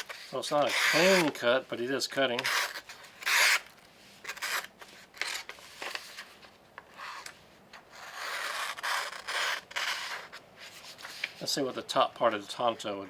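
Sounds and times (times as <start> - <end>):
knife rasping through paper: 0.0 - 1.4, 7.9 - 11.3.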